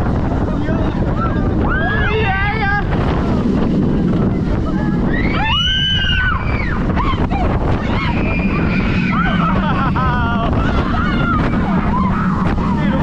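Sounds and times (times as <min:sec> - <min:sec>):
wind buffeting microphone: 0:00.0 - 0:13.0
riders screaming: 0:05.0 - 0:13.0.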